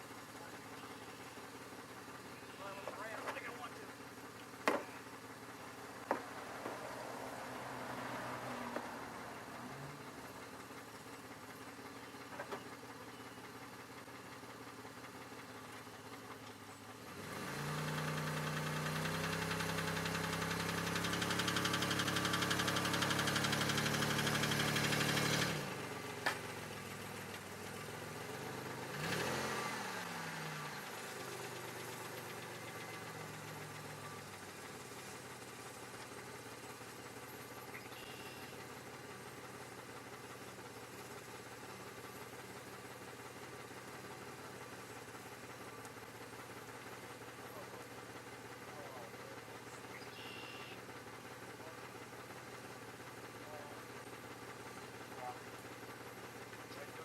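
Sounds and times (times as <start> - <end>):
loud steady running sound: 0.0 - 8.1
car engine idling: 0.0 - 57.0.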